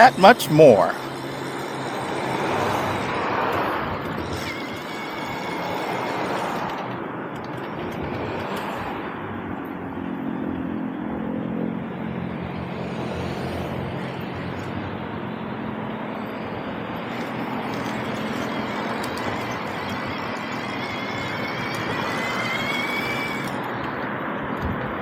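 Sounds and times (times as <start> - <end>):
thin high whine: 0.0 - 6.9
wind and road noise: 0.0 - 25.0.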